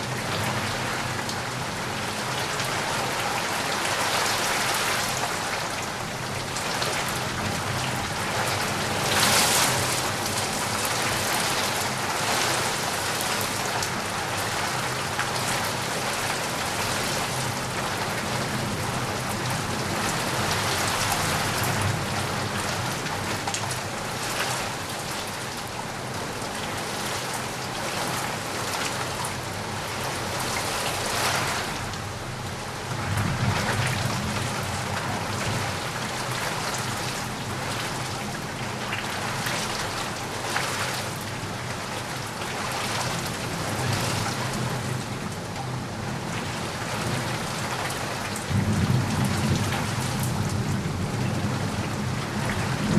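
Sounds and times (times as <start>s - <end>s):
heavy rain falling: 0.0s - 52.9s
distant thunder rumbling: 48.5s - 52.9s.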